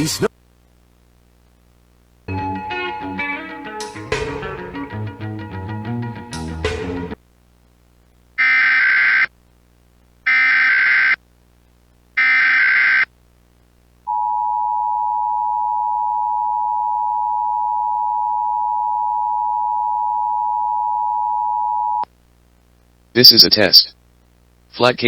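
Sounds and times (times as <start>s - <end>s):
two-tone attention signal: 2.3s - 4.8s.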